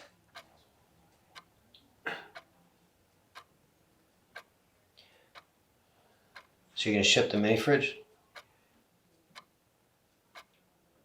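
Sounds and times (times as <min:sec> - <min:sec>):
clock ticking: 0:00.0 - 0:03.6, 0:04.2 - 0:10.7.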